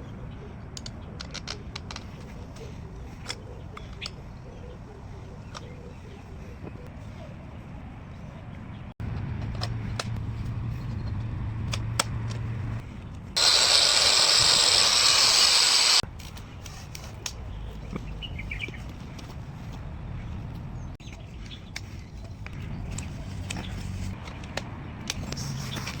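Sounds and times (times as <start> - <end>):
angle grinder grinding: 13.4 - 16.0
angle grinder humming: 13.4 - 16.0.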